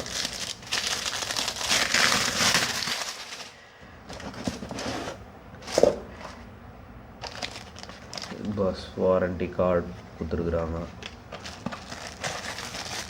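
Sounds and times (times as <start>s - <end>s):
packaging rustling and crinkling: 0.0s - 6.4s, 7.2s - 8.6s, 11.0s - 13.0s.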